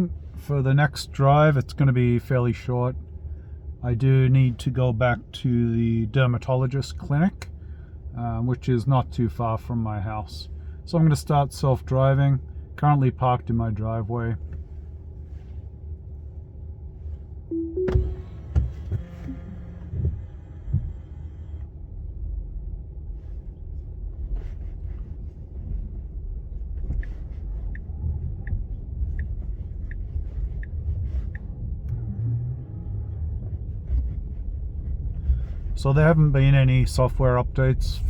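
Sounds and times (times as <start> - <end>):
car road and motor rumble: 0.0 - 38.0
two-note rising chime: 17.5 - 18.5
turn signal ticking: 17.5 - 21.0, 26.8 - 33.8.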